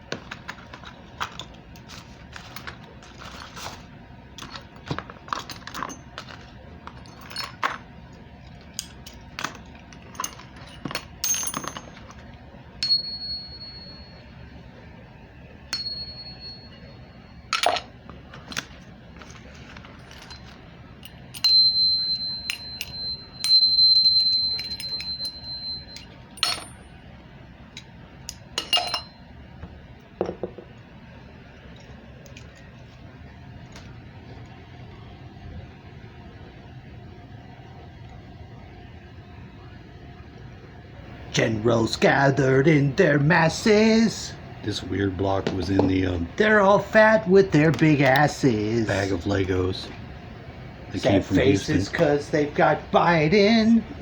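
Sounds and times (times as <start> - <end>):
small hard parts clinking: 8.7 - 14.3, 15.7 - 26.8, 28.3 - 29.2
thin high steady tone: 12.8 - 15.0, 15.6 - 17.8, 21.3 - 26.7.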